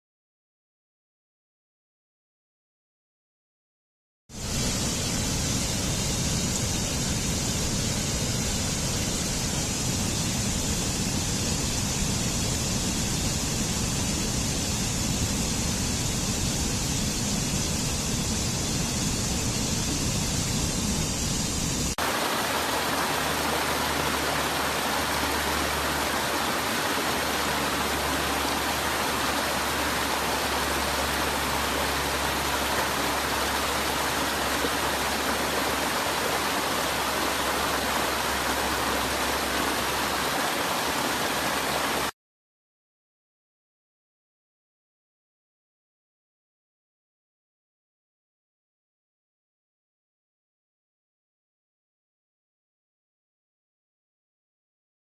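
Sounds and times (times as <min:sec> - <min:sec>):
waterfall rushing: 0:22.0 - 0:42.1.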